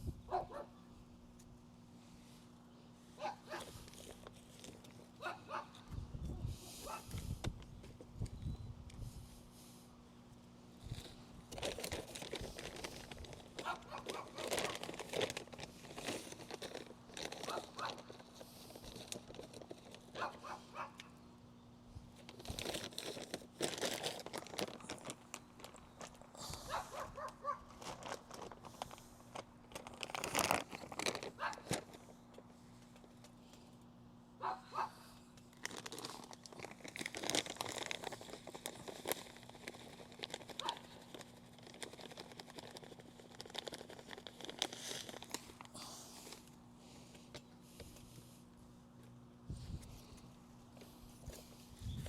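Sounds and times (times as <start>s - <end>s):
crinkling and rustling: 3.2s - 5.9s, 10.8s - 20.6s, 22.1s - 33.6s, 35.4s - 52.0s.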